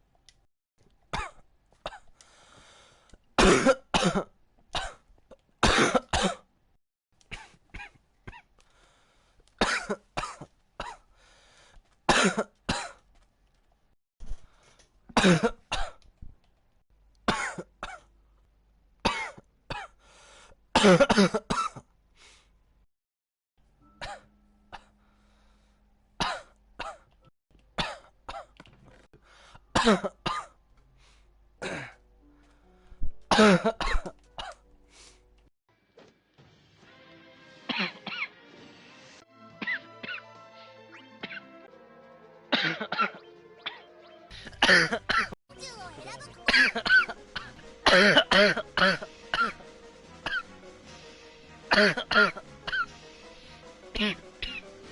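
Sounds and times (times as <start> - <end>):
person coughing: 1.1 - 2.1, 3.4 - 5.0, 5.6 - 6.5, 7.3 - 8.5, 9.6 - 11.0, 12.1 - 13.0, 15.2 - 16.0, 17.3 - 18.1, 20.8 - 21.9, 24.0 - 24.9, 26.2 - 27.0, 29.7 - 30.6, 31.6 - 32.0, 33.3 - 34.6, 37.7 - 38.3, 39.6 - 40.2, 42.5 - 45.4, 46.4 - 49.6, 51.7 - 52.9, 53.9 - 54.6.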